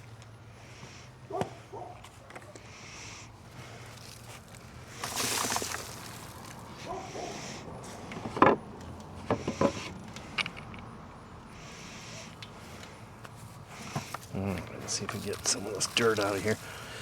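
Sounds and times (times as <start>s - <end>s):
rustling scrape of soil: 3.7s - 8.1s, 14.9s - 16.9s
sharp knocks and clicks: 8.1s - 10.9s.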